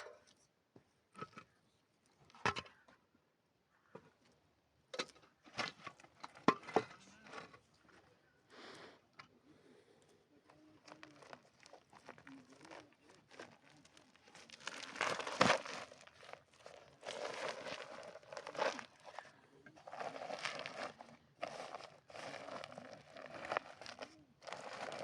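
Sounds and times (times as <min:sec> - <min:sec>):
hands rustling and scraping: 0:10.4 - 0:25.0.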